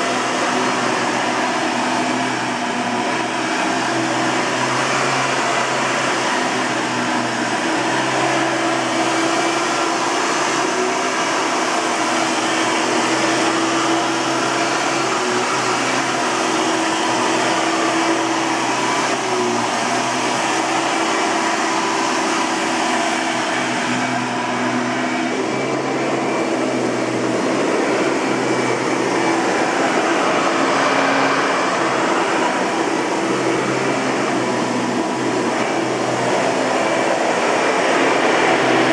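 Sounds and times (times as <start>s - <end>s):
vacuum cleaner running: 0.0s - 38.9s.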